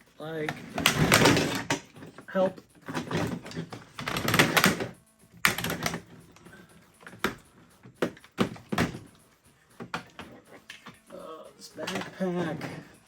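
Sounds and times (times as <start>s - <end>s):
plastic parts clicking and rattling: 0.3s - 9.2s, 11.7s - 12.9s.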